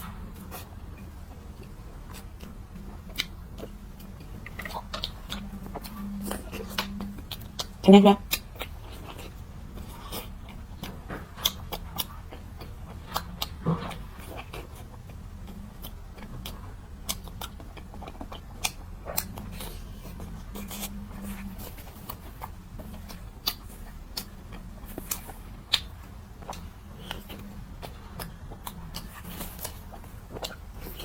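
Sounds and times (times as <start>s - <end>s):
person chewing: 0.0s - 31.0s
steady low hum: 0.0s - 31.0s.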